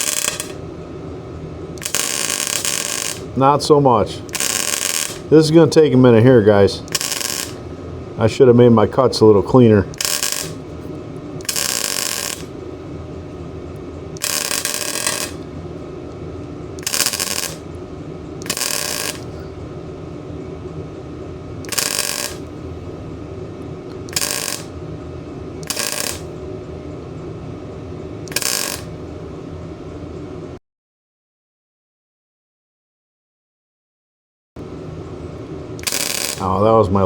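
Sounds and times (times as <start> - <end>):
welding arc crackle: 0.0 - 0.6, 1.8 - 5.4, 6.8 - 7.6, 10.0 - 12.6, 14.2 - 15.5, 16.8 - 17.7, 18.4 - 19.4, 21.7 - 22.5, 23.9 - 24.8, 25.6 - 26.3, 28.3 - 29.0, 35.8 - 36.8
machine hum: 0.0 - 30.6, 34.6 - 37.0.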